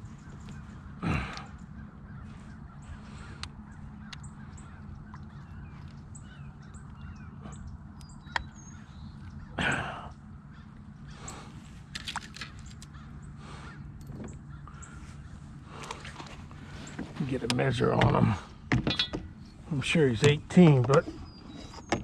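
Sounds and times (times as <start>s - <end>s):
steady low rumble: 0.0s - 21.9s
small birds chirping: 0.0s - 22.0s
crow cawing: 0.1s - 7.6s, 8.2s - 11.6s, 12.8s - 16.9s
sharp clicks: 6.7s - 8.6s.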